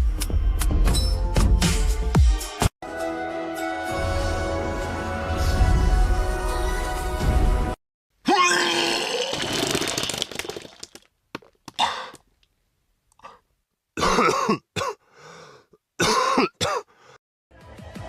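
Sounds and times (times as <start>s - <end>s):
man vomiting: 8.2s - 9.6s
harsh coughs: 14.0s - 15.0s, 16.0s - 16.9s.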